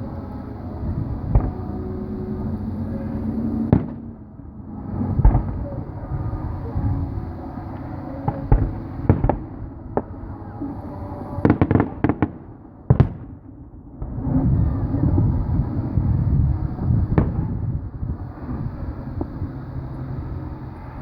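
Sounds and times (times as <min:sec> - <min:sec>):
low rumbling: 0:00.0 - 0:21.0
fireworks bangs: 0:00.8 - 0:04.2, 0:04.9 - 0:05.9, 0:07.6 - 0:10.4, 0:11.2 - 0:17.7
fireworks crackling pops: 0:01.2 - 0:01.8, 0:03.7 - 0:04.1, 0:07.7 - 0:10.2, 0:11.4 - 0:13.4.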